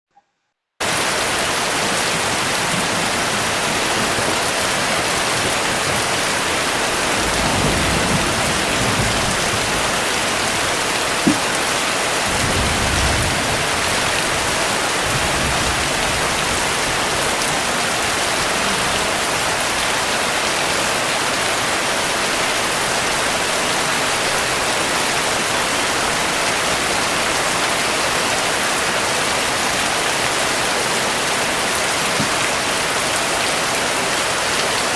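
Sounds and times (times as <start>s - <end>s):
heavy rain: 0.8s - 34.9s
distant thunder rumbles: 5.4s - 19.1s
short knock: 11.2s - 11.5s.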